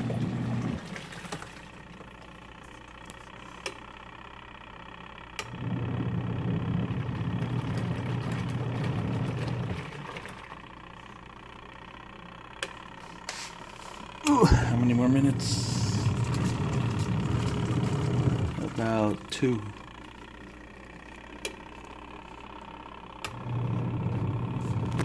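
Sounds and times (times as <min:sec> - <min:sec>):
washing machine motor humming: 0:00.0 - 0:25.0.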